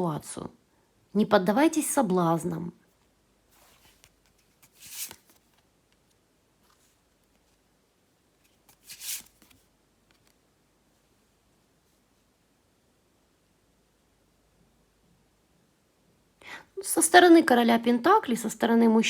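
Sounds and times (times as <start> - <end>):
cards sliding and rustling: 3.5 - 7.6, 8.4 - 10.4.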